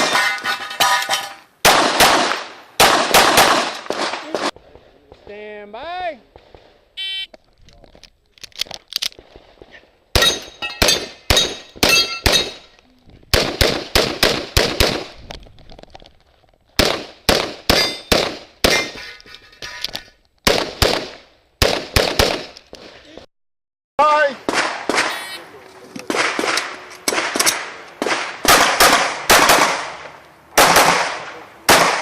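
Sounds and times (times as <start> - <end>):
pistol shots: 1.6 - 4.5, 13.3 - 15.1, 16.8 - 18.9, 20.4 - 22.6, 24.4 - 25.4, 26.1 - 32.0
electronic timer beep: 7.0 - 7.3.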